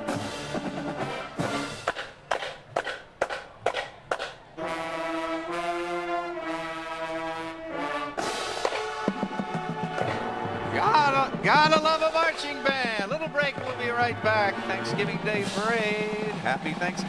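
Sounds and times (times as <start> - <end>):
marching band playing: 0.0 - 17.0
held brass chord: 4.6 - 16.7.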